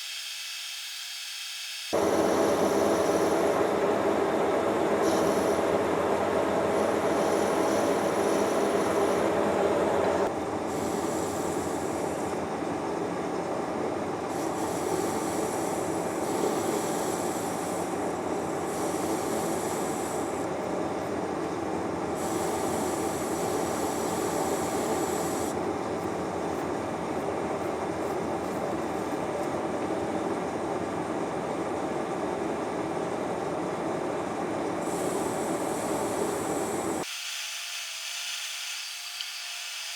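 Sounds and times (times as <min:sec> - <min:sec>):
high-pitched cutting hiss: 0:00.0 - 0:03.7, 0:04.9 - 0:06.0, 0:06.7 - 0:12.3, 0:22.2 - 0:25.6, 0:34.8 - 0:39.9
metal lathe running: 0:01.9 - 0:37.1.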